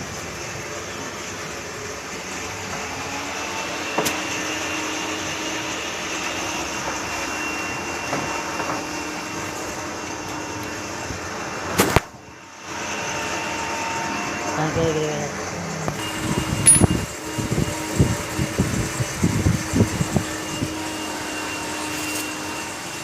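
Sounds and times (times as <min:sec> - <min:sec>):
workshop mechanical hum: 0:00.0 - 0:23.0
hand tool clicks: 0:16.6 - 0:17.0.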